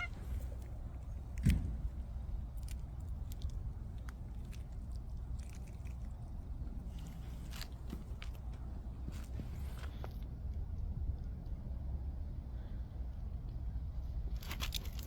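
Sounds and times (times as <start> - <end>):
cat chewing food: 0.0 - 10.2.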